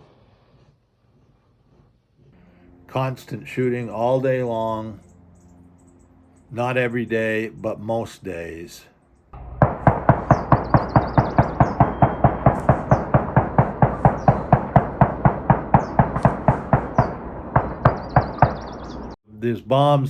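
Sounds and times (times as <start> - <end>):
rapid gunfire: 9.4 - 18.8.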